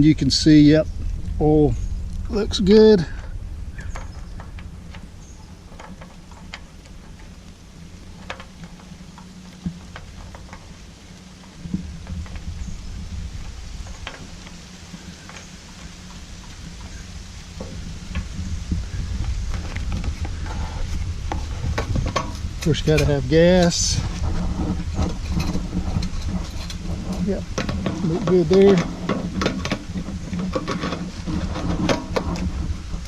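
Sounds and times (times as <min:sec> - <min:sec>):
low steady rumble: 0:00.0 - 0:33.0.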